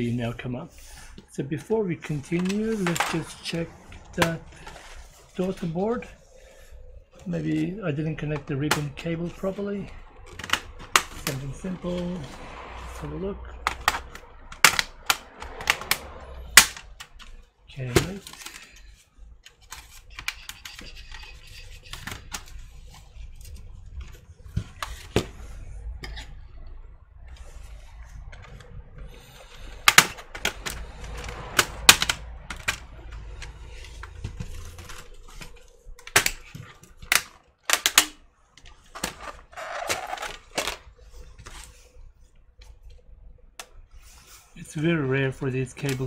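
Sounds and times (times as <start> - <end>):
sharp plastic snaps: 13.6 - 17.4, 29.6 - 40.8.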